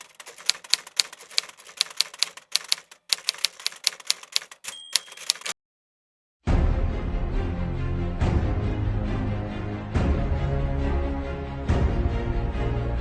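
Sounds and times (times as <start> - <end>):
typewriter bell ringing: 0.0 - 5.6
typewriter key clicks: 0.0 - 5.6.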